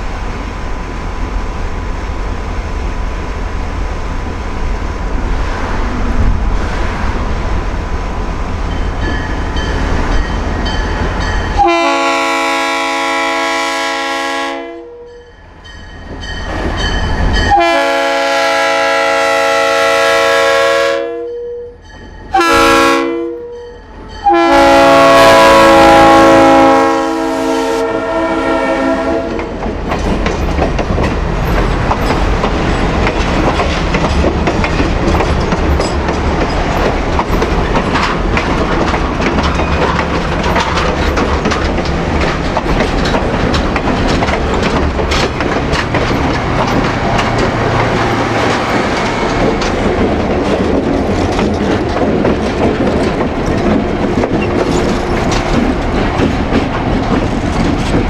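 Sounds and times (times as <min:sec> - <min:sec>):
locomotive air horn blasts: 0:11.6 - 0:15.2, 0:17.5 - 0:23.6, 0:24.2 - 0:29.4
locomotive engine: 0:23.9 - 0:58.0
wheels clicking over rail joints: 0:29.3 - 0:58.0.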